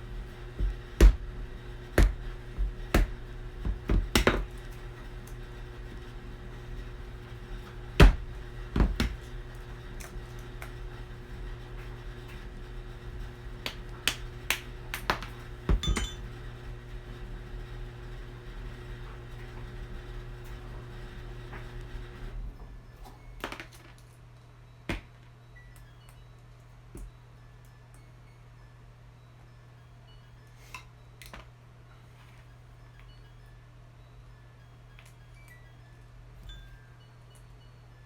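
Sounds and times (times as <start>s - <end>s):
steady low hum: 0.0s - 38.0s
tools knocking on workbench: 2.0s - 4.5s, 8.0s - 9.2s, 15.7s - 16.2s.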